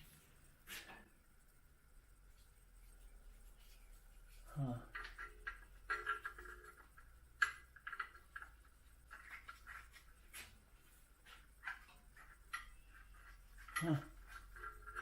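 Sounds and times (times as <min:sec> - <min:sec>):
hand tools clicking and tapping: 0:04.8 - 0:10.6, 0:11.2 - 0:15.0.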